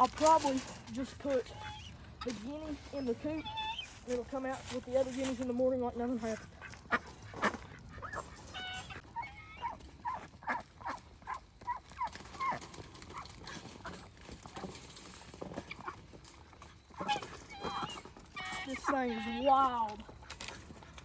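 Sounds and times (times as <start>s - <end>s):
ducks quacking: 0.0s - 12.6s, 16.9s - 21.0s
guinea fowl squawking: 1.4s - 4.2s, 6.2s - 13.2s, 16.9s - 20.4s.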